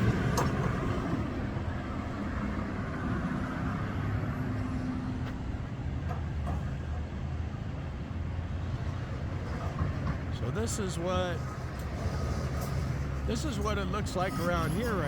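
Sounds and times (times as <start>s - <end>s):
highway traffic: 0.0s - 15.0s.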